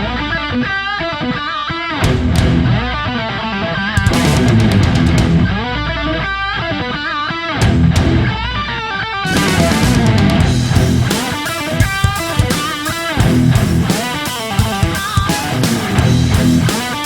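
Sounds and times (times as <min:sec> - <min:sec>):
heavy metal electric guitar: 0:00.0 - 0:17.0
steady drum beat: 0:02.0 - 0:02.8, 0:04.0 - 0:06.1, 0:09.3 - 0:17.0.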